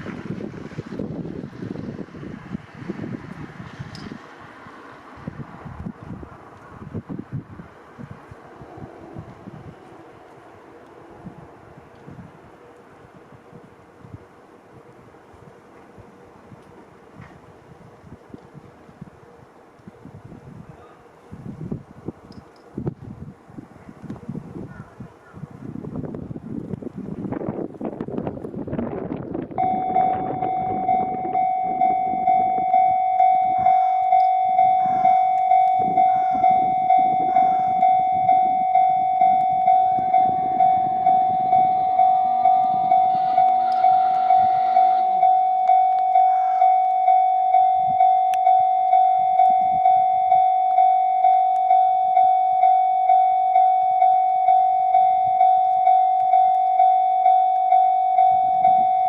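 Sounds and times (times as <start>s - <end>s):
railcar engine hum: 0.0s - 59.0s
level crossing bell ringing: 29.6s - 59.0s.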